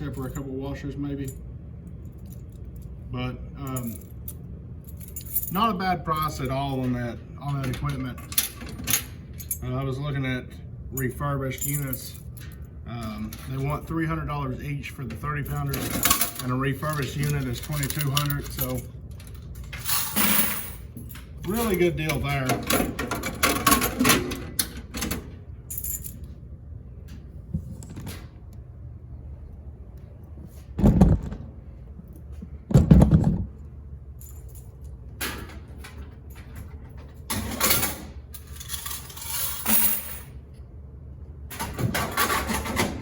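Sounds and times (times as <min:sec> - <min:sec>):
objects clattering and knocking: 0:30.6 - 0:31.6, 0:32.4 - 0:33.6.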